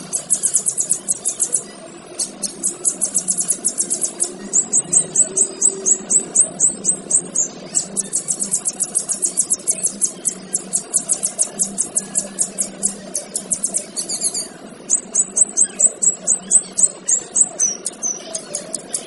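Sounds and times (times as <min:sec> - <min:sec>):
bird singing sharp repeated notes: 0:00.0 - 0:19.0.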